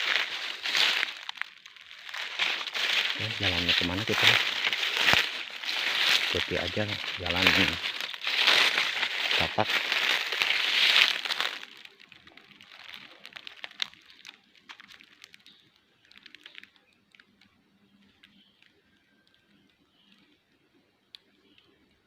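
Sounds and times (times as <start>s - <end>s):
footsteps through dry leaves: 0.0s - 16.7s
twigs cracking: 0.0s - 20.2s.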